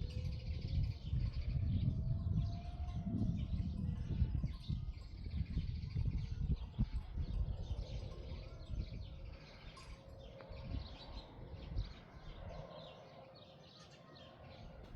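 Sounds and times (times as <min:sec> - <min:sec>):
small birds chirping: 0:03.2 - 0:14.9.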